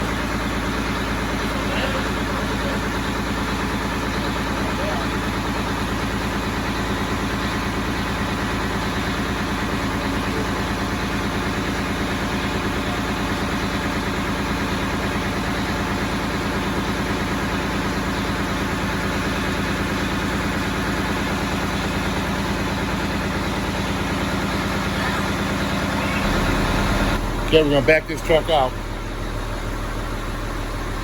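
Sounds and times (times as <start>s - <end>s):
diesel truck engine idling: 0.0s - 31.0s.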